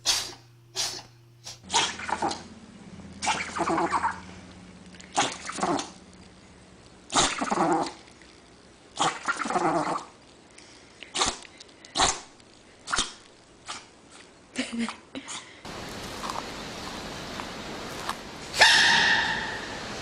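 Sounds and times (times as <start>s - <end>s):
dog sneezing: 0.0s - 2.4s, 11.1s - 11.4s, 18.6s - 19.7s.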